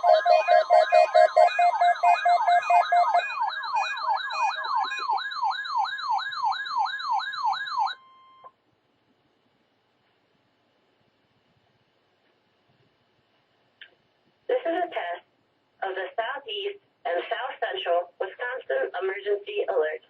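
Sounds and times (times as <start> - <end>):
electronic siren falling sweep: 0.0 - 8.1
steady high tone: 0.0 - 8.5.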